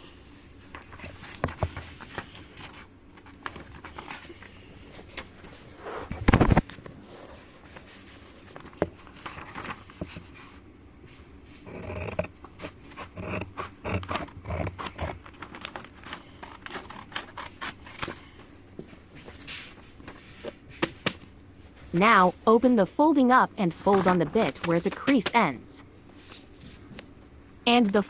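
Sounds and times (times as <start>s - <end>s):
paper rustling: 0.6s - 10.6s, 15.3s - 21.8s, 23.8s - 25.3s, 26.1s - 27.4s
scissors snipping paper: 12.9s - 18.2s.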